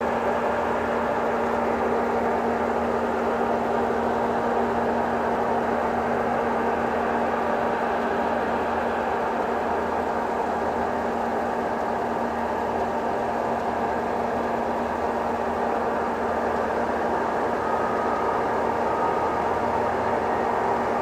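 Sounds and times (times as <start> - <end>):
heavy diesel machinery drone: 0.0 - 21.0.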